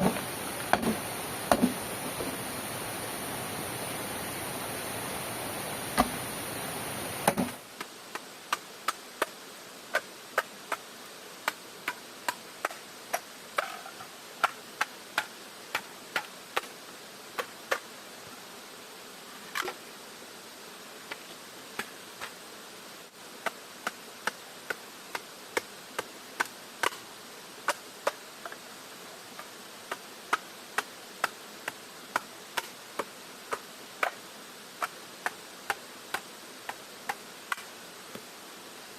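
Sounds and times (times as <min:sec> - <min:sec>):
sharp knocks: 0:00.0 - 0:02.3
steady hiss like rain: 0:00.0 - 0:38.9.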